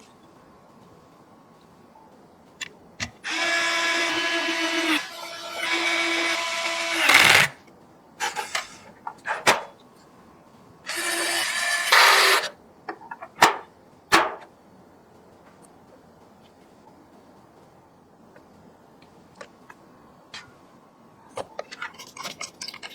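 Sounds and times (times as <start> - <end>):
electric screwdriver whirring: 3.2 - 7.6, 10.9 - 12.5.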